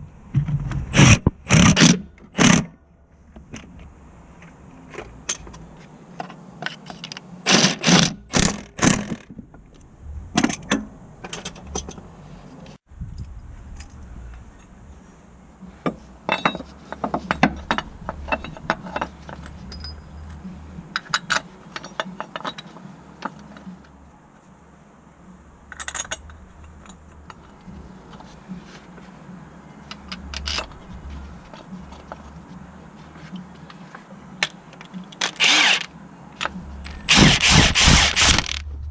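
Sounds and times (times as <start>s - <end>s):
steady low hum: 9.4s - 21.8s
metal tools clinking: 16.3s - 23.7s, 25.7s - 27.6s.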